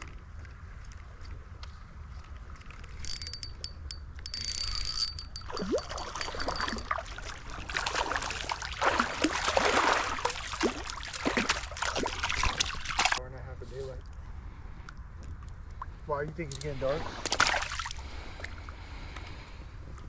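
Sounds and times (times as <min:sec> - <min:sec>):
fishing tackle clicking: 0:02.6 - 0:06.8
water splashing and sloshing: 0:05.2 - 0:13.2, 0:15.3 - 0:19.0.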